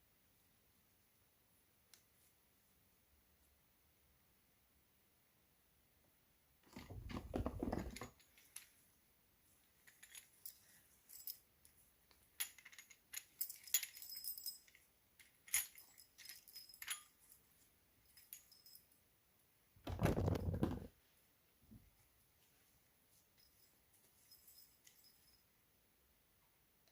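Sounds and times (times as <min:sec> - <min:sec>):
rustling handling noise: 0:06.7 - 0:08.9
padlock and keys clinking: 0:12.1 - 0:17.4.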